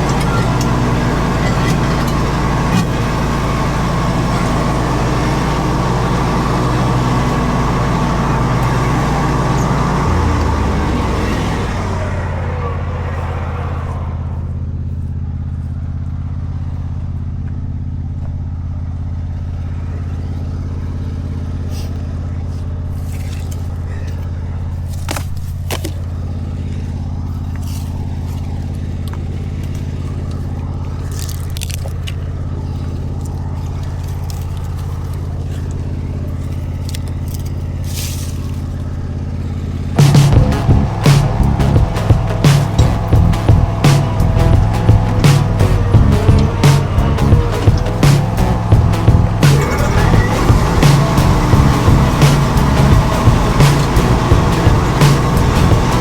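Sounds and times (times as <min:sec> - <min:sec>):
wide rushing noise: 0:00.0 - 0:15.2, 0:39.9 - 0:56.0
mower engine running: 0:00.0 - 0:56.0.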